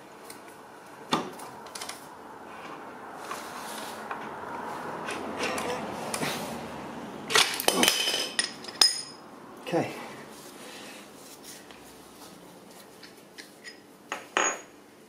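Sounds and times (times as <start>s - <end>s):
metal axle sliding and scraping: 2.5s - 6.6s.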